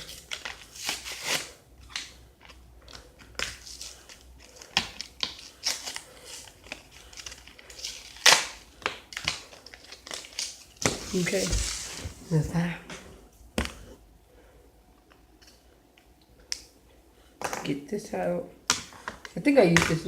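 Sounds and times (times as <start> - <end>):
plastic packaging torn open: 0.1 - 1.5, 6.6 - 11.4.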